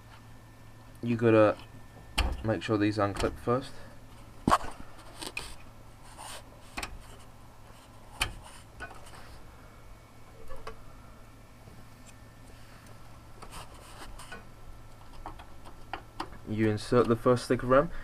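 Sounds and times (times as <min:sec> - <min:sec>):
light rubbing: 0:12.0 - 0:16.0.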